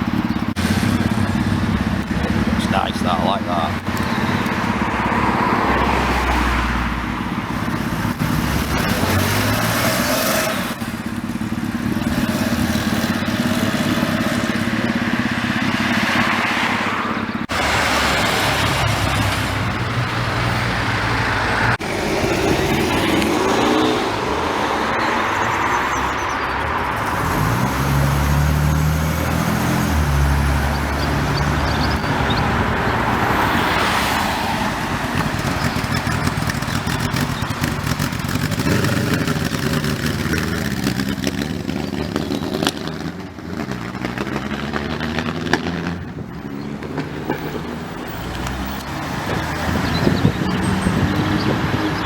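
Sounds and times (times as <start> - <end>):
car engines revving: 0.0 - 52.0
road traffic noise: 0.0 - 52.0.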